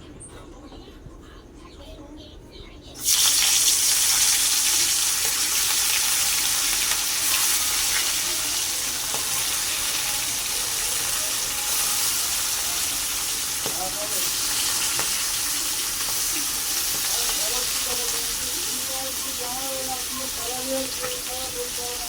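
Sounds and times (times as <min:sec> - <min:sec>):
food sizzling in hot oil: 0:03.0 - 0:22.0.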